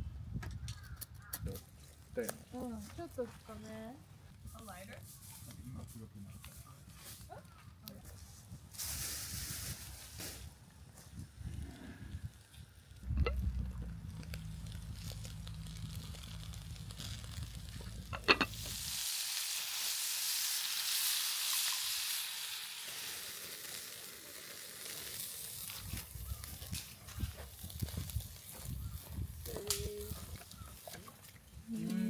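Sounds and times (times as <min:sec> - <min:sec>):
meat sizzling in a pan: 0:14.4 - 0:26.8.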